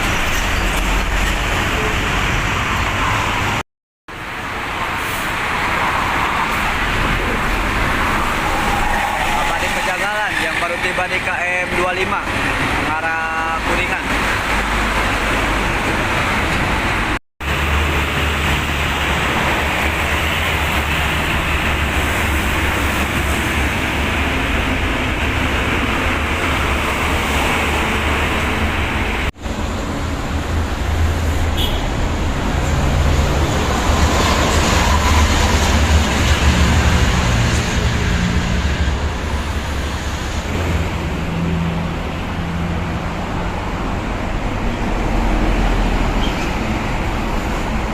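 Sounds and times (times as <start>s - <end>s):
highway traffic rushing past: 0.0s - 47.9s
heavy vehicle engine drone: 10.4s - 47.9s.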